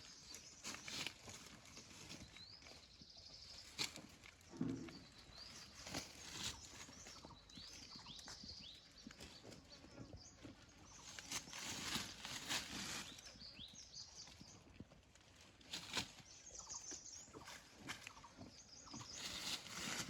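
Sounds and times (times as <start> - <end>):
small birds chirping: 0.0 - 20.0
rustling: 11.0 - 13.4, 19.2 - 20.0.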